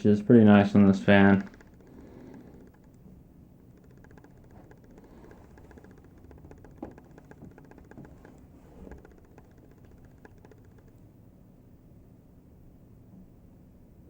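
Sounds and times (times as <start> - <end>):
fan coasting down ticking: 0.0 - 11.3.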